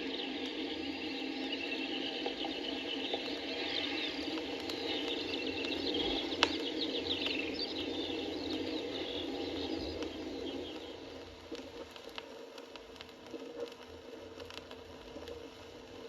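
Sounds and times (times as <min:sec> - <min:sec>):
small birds chirping: 0:00.0 - 0:11.2.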